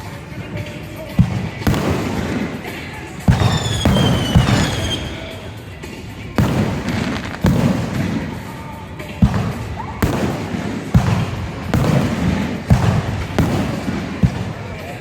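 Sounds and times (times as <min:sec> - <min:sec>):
firework booms: 0:00.0 - 0:15.0
firework rumble and crackle: 0:00.0 - 0:15.0
music: 0:00.0 - 0:15.0
falling whistling tones: 0:02.6 - 0:05.7.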